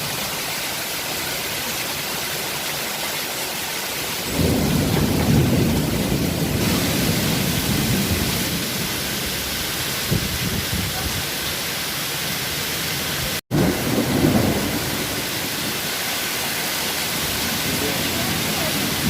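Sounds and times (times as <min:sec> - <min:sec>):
heavy rain pouring: 0:00.0 - 0:19.0
thunder rumbling: 0:04.3 - 0:11.2, 0:13.5 - 0:16.0, 0:17.1 - 0:19.0.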